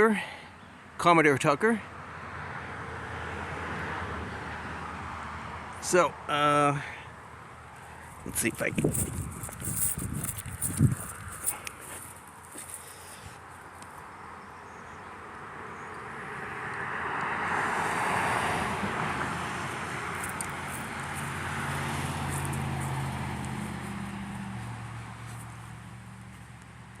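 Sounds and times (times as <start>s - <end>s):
vehicle engine hum: 2.7s - 27.0s
car tyre noise: 7.7s - 14.1s, 16.4s - 27.0s.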